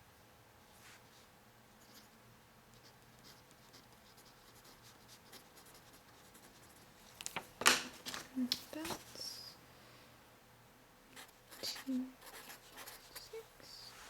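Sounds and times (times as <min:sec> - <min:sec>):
handwriting on paper: 0:02.8 - 0:06.8, 0:11.2 - 0:13.4.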